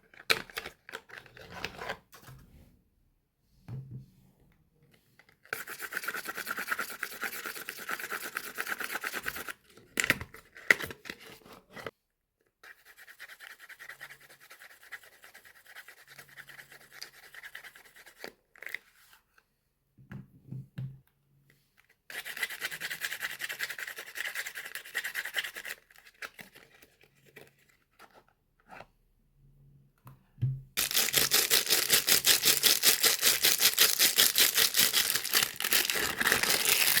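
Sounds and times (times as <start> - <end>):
soap wrappers tearing and crinkling: 30.8 - 37.0.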